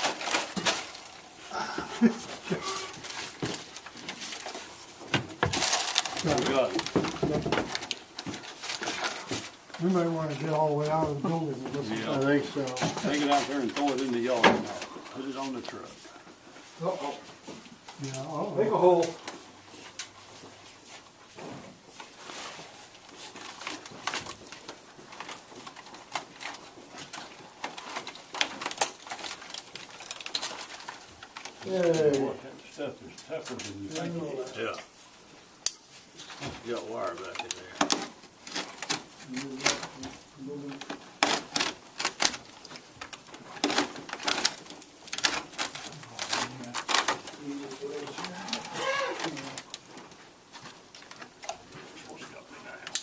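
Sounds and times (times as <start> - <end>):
scenery cracking and snapping: 0.0 - 9.9, 23.3 - 32.3, 37.0 - 53.0.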